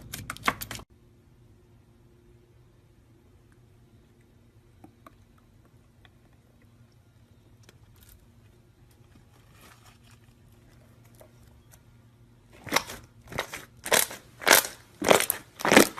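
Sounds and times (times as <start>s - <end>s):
crunchy slime squeezes: 12.5s - 15.9s
slime clicking and crackling: 12.6s - 15.9s.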